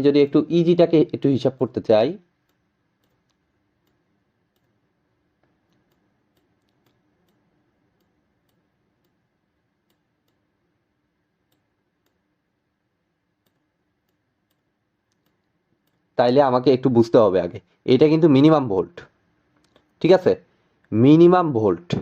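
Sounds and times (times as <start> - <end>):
faint steady hum: 0.0 - 22.0
faint clicks: 2.4 - 4.8, 5.4 - 9.2, 13.4 - 16.1.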